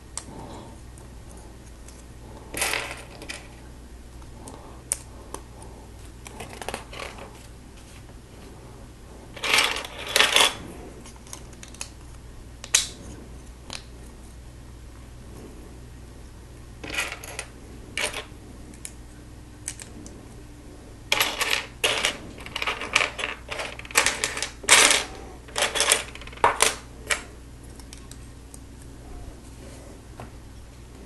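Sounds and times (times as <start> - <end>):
plastic pieces clattering: 9.4 - 10.6, 21.1 - 27.2.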